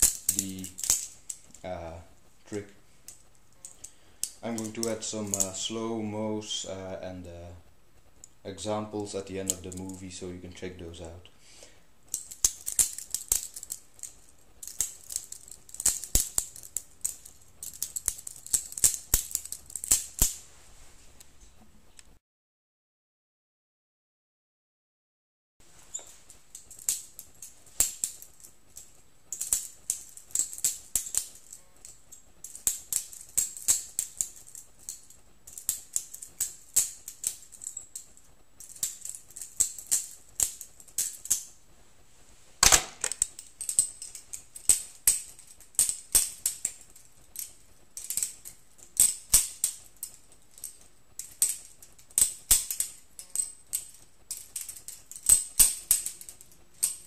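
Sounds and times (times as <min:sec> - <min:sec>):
butterfly knife handles clacking: 0:00.0 - 0:01.7, 0:03.1 - 0:05.6, 0:09.0 - 0:10.2, 0:12.1 - 0:20.4, 0:25.9 - 0:41.5, 0:43.0 - 0:57.0.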